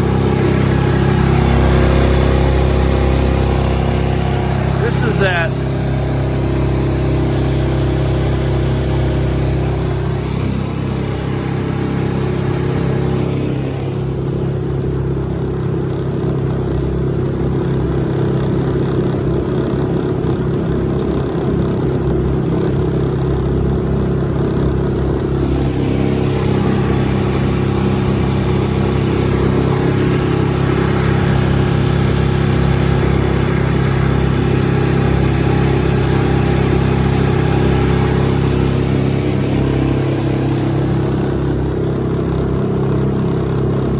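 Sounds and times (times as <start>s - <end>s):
outboard motor running: 0.0s - 43.9s.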